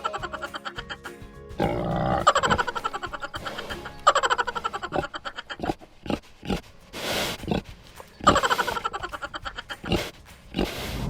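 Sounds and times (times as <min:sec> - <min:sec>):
pig calling: 0:01.6 - 0:11.0.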